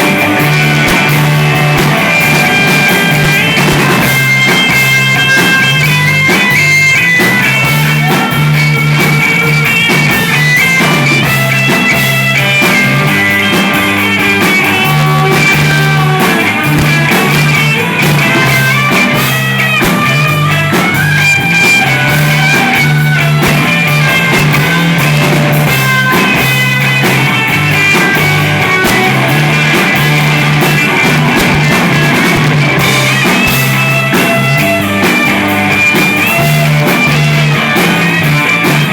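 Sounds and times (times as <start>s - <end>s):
instrumental rock music: 0.0s - 38.9s.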